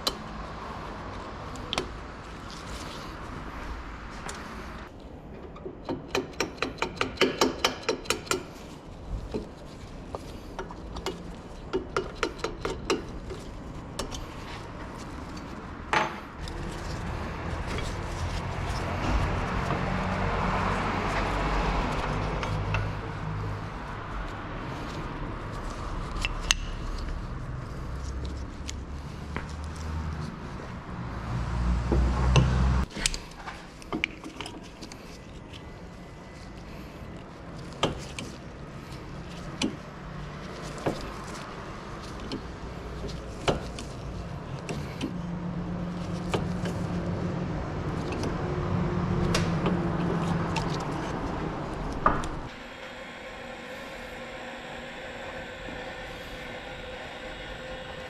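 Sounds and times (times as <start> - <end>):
hand tools clicking and knocking: 5.4 - 8.7, 10.2 - 16.7
low rumble: 51.0 - 58.0
steady hum: 51.1 - 58.0.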